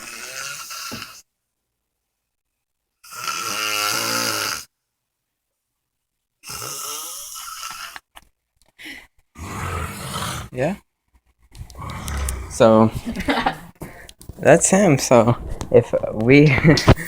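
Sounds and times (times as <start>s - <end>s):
man snoring: 0.0s - 1.2s, 3.0s - 4.7s, 6.4s - 8.0s, 9.4s - 10.6s, 11.8s - 12.8s.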